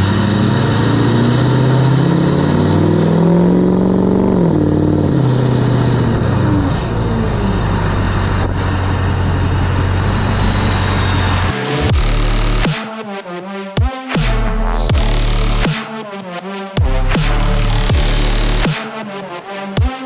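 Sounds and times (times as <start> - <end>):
diesel truck engine accelerating: 0.0 - 12.6
faint high whistle: 9.4 - 11.9.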